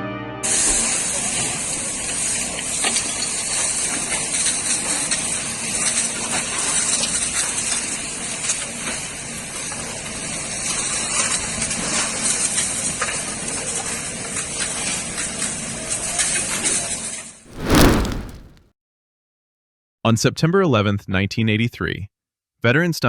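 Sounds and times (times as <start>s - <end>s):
steady rushing noise: 17.5s - 18.6s.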